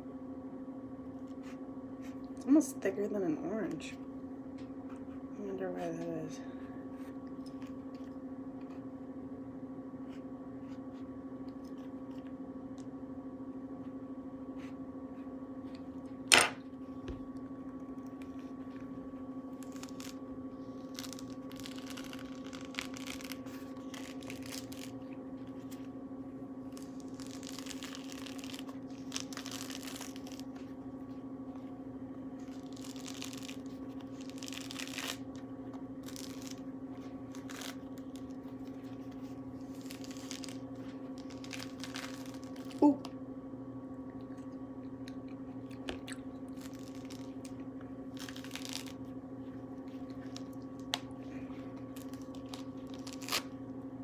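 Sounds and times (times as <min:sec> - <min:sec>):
steady low hum: 0:00.0 - 0:54.0
peel being torn by hand: 0:20.8 - 0:25.0, 0:26.8 - 0:30.7, 0:32.5 - 0:35.4, 0:36.0 - 0:36.6, 0:37.3 - 0:38.8, 0:39.7 - 0:40.6, 0:48.1 - 0:49.0, 0:52.0 - 0:53.6.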